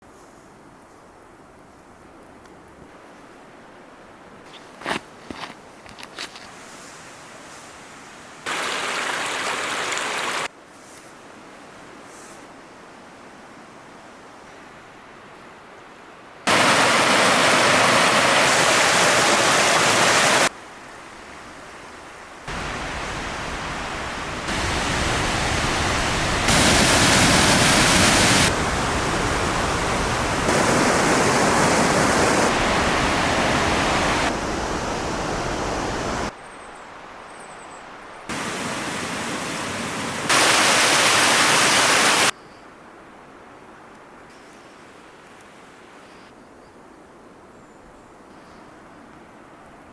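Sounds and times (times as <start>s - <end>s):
waterfall rushing: 8.5s - 10.5s, 16.5s - 20.5s, 22.5s - 36.3s, 38.3s - 42.3s.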